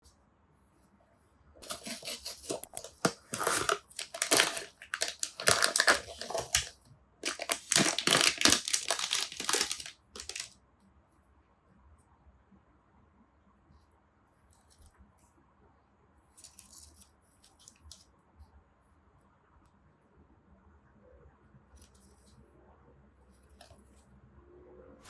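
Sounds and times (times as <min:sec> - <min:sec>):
packaging crinkling and tearing: 0:01.6 - 0:10.5.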